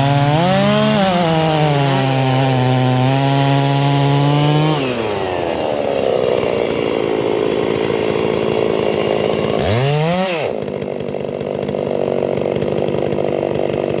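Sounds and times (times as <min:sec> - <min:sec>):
chainsaw cutting wood: 0:00.0 - 0:14.0.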